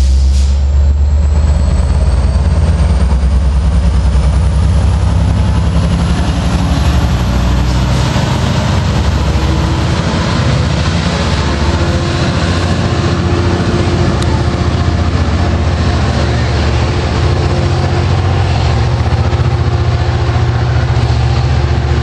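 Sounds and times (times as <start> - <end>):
diesel locomotive engine throbbing: 0.0 - 22.0.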